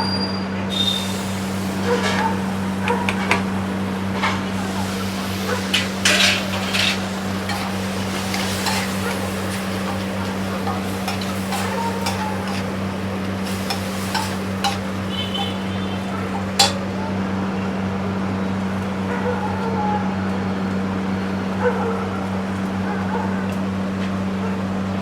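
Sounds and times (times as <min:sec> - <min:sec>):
metal utensil scraping on griddle: 0:00.7 - 0:17.0
steady low hum: 0:00.7 - 0:17.1
sharp metal clank: 0:16.6 - 0:17.0.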